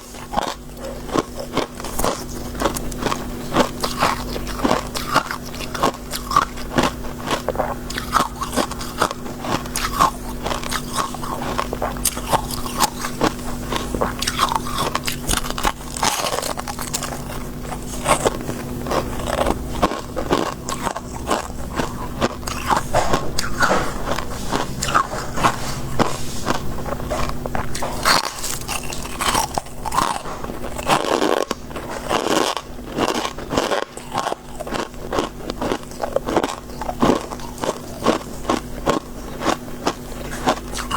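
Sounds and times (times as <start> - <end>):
crunching ice while chewing: 0.0 - 40.9.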